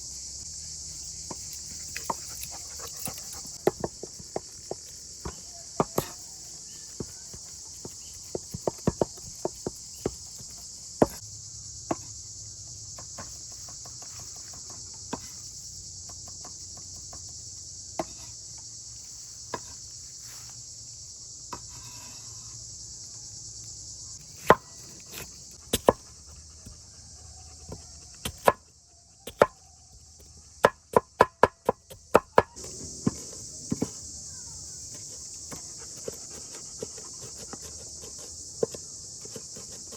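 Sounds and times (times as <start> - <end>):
insects chirping: 0.0 - 39.9
knife chopping on cutting board: 5.2 - 6.3, 24.4 - 26.1, 27.7 - 28.6, 29.3 - 29.5.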